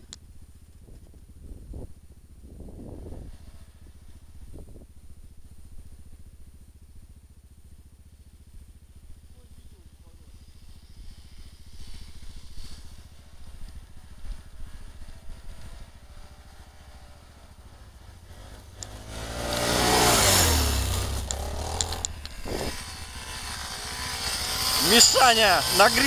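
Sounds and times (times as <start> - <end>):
atv engine revving past: 2.7 - 4.7, 10.3 - 26.0
distant vehicle engines rumbling: 8.6 - 26.0.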